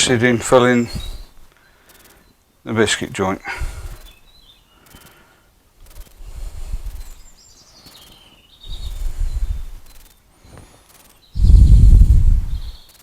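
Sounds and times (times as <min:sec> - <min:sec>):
birds chirping: 0:00.0 - 0:13.0
low rumbling gusts on microphone: 0:03.6 - 0:04.2, 0:06.2 - 0:07.3, 0:08.6 - 0:09.9, 0:11.4 - 0:12.8.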